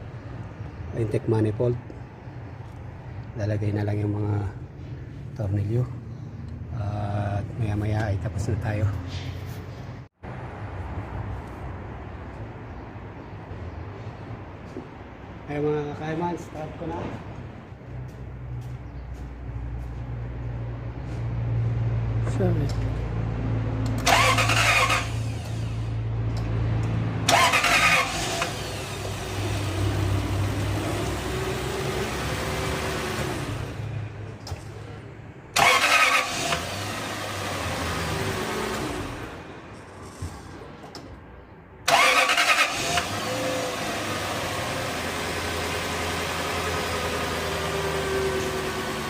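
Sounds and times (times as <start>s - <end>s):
car engine cranking and starting: 23.8s - 34.7s, 35.5s - 40.2s, 41.8s - 49.0s.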